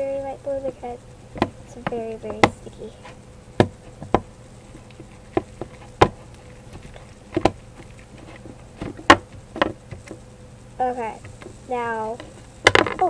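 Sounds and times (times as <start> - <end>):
faint buzzing hum: 0.0 - 13.0
slime stirred in a bowl: 3.8 - 10.2.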